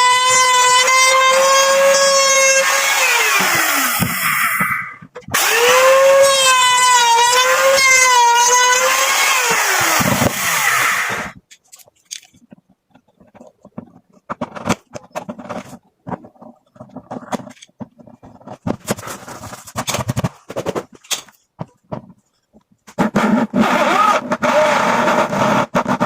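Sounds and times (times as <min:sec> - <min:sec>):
power tool motor whining: 0:00.0 - 0:11.4.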